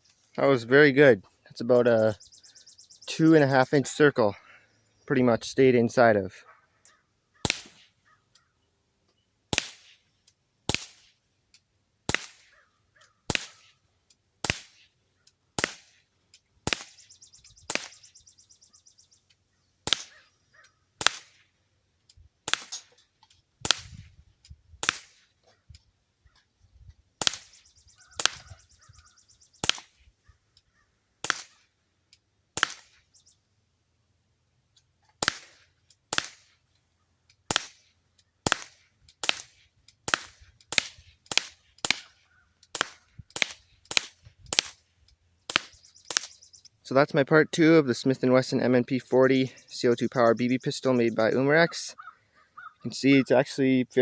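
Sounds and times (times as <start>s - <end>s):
bb pistol firing pops: 6.8s - 8.2s, 9.5s - 11.2s, 12.1s - 13.8s, 14.4s - 14.9s, 15.6s - 18.2s, 19.8s - 21.6s, 22.4s - 26.4s, 27.2s - 31.8s, 32.6s - 33.1s, 35.1s - 36.7s, 37.3s - 46.6s.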